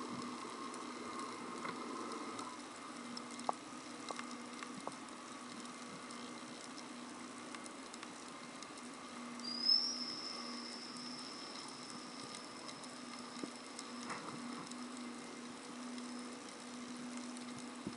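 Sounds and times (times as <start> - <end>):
faint crackle of clicks: 0.0 - 17.9
low steady hum: 0.0 - 17.9
high underwater whistle: 9.4 - 11.9.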